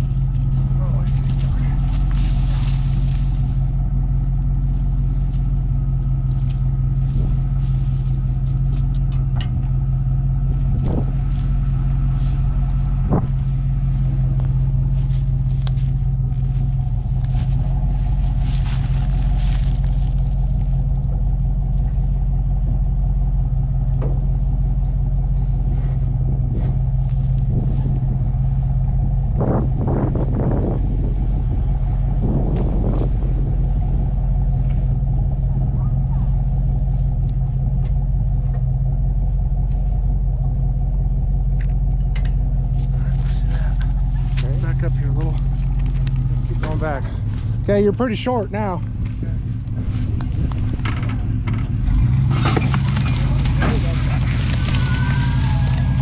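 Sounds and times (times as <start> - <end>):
truck engine running: 0.0 - 56.0.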